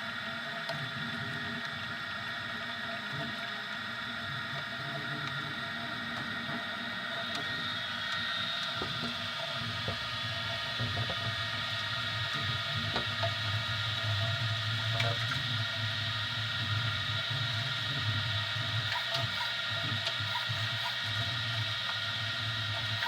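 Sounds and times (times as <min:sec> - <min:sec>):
stepper motor whine: 0:16.9 - 0:23.0.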